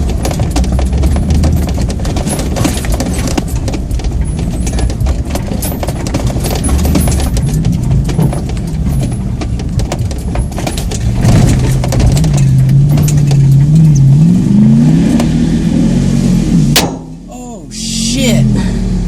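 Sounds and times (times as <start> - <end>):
knocks and rattles: 0.0 - 14.4.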